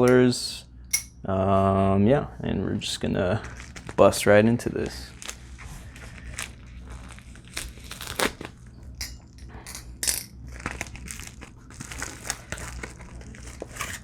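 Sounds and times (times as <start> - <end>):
packaging crinkling and rustling: 3.3 - 8.7, 10.4 - 14.0.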